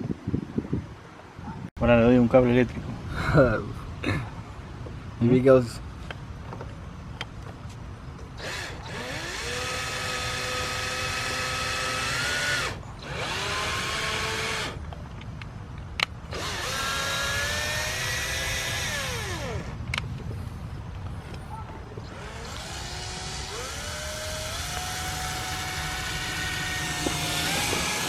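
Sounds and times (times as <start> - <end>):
electric drill drilling: 8.4 - 14.8, 16.3 - 19.8, 22.1 - 28.0.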